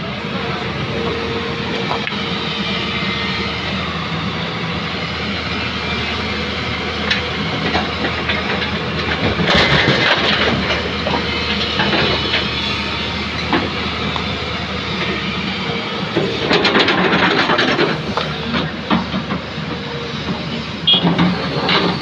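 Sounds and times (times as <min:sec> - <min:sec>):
excavator diesel engine running: 0:00.0 - 0:22.0
concrete scraping and clanking: 0:07.1 - 0:13.8.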